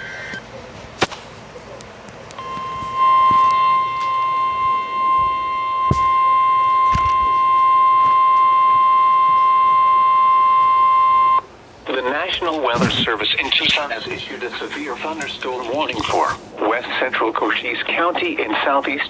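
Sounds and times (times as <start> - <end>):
steady alarm tone: 2.4 - 11.5.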